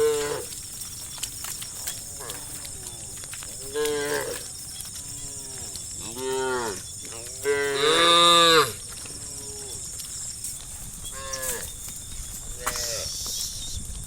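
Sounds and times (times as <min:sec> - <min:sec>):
cows mooing: 0:00.0 - 0:00.8, 0:01.4 - 0:10.1, 0:11.1 - 0:11.9, 0:12.5 - 0:13.2.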